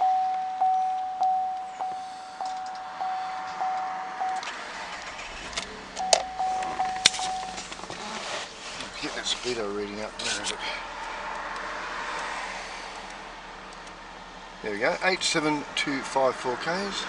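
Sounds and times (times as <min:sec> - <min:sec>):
car warning chime: 0:00.0 - 0:04.5, 0:05.9 - 0:07.8.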